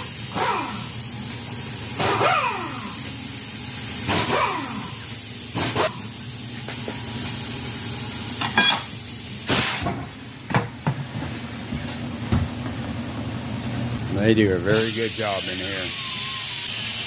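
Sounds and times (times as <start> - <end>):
compressed air hissing: 9.3 - 9.9, 14.7 - 17.0
brief squeal: 15.7 - 16.7.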